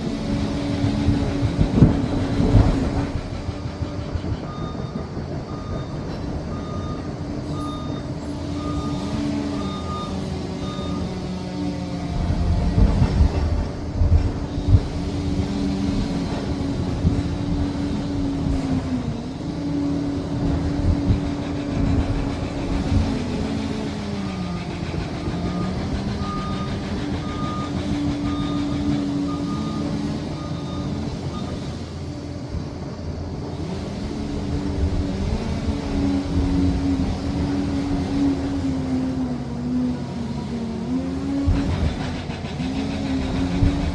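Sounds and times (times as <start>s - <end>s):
dozer diesel engine: 0.0s - 43.9s
reversing alarm beeping: 3.5s - 11.8s, 24.3s - 31.8s.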